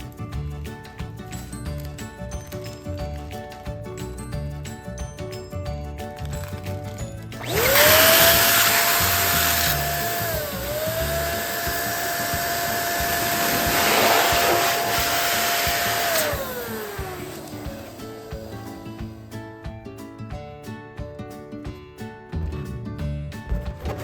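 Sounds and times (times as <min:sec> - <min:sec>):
electric balloon pump motor: 0:06.2 - 0:19.2.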